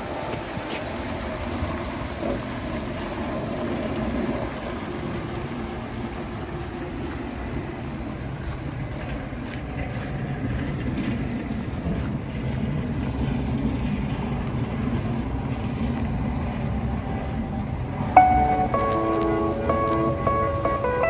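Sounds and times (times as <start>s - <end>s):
passing traffic: 12.7s - 21.0s.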